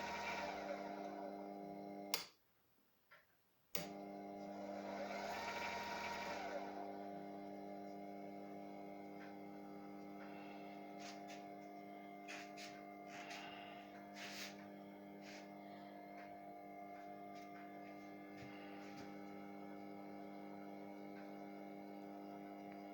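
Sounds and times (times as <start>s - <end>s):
electric motor humming: 0.0s - 2.2s, 3.8s - 22.9s.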